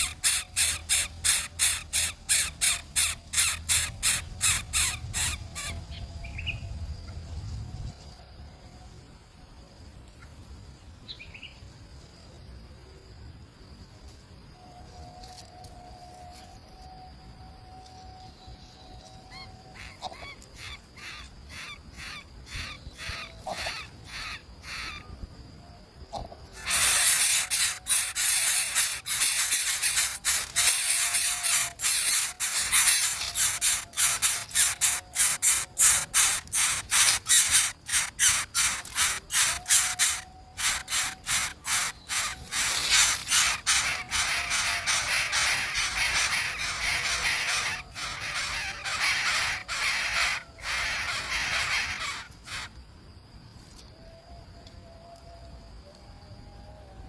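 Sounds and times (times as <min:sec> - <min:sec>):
nestling birds begging calls: 0:00.0 - 0:06.7, 0:19.3 - 0:25.1, 0:26.5 - 0:52.7.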